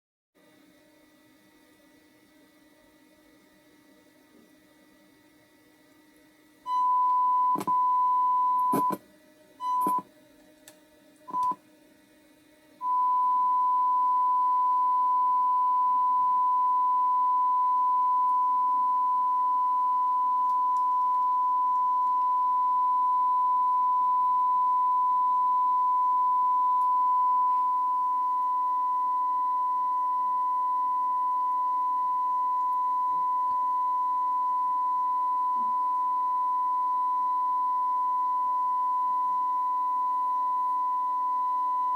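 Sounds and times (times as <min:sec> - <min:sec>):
steady pure test tone: 0:06.7 - 0:09.0, 0:09.6 - 0:10.1, 0:11.2 - 0:11.6, 0:12.8 - 0:41.9.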